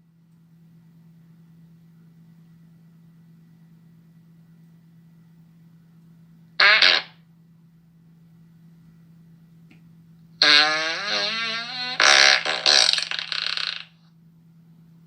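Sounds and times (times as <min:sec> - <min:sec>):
long sputtering fart: 0:06.6 - 0:07.2, 0:10.4 - 0:14.0.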